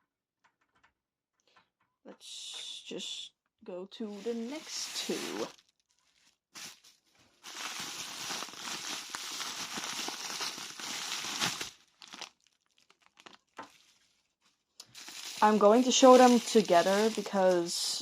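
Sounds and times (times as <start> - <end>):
packaging crinkling and tearing: 4.4 - 17.8.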